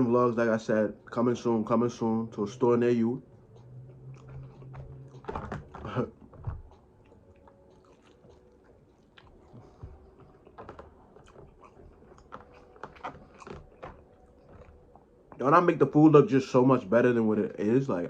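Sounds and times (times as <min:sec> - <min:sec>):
person chewing food: 0:03.3 - 0:15.4.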